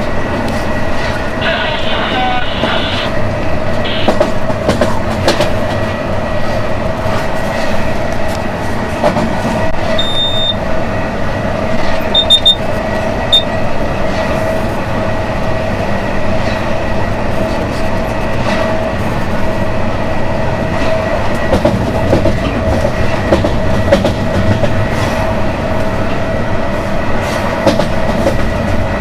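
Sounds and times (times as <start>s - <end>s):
locomotive running gear drone: 0.0s - 29.0s
short high electronic beeps: 12.2s - 12.6s.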